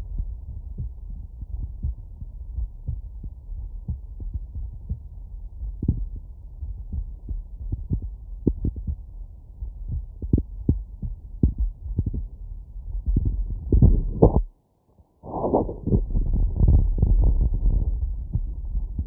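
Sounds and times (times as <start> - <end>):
heartbeat through stethoscope: 0.0 - 14.5, 15.3 - 19.0.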